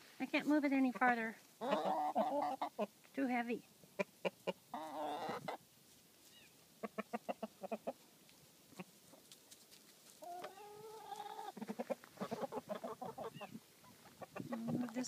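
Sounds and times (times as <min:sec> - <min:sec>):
chickens clucking: 0:00.8 - 0:03.0, 0:03.8 - 0:05.7, 0:06.3 - 0:15.0
chicken drawn-out call: 0:01.6 - 0:02.9, 0:04.0 - 0:05.6, 0:10.2 - 0:14.8.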